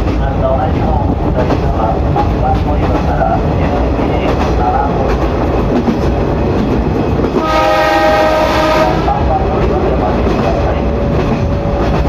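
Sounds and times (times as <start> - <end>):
electric train rumbling: 0.0 - 12.0
train horn chord: 7.4 - 9.2.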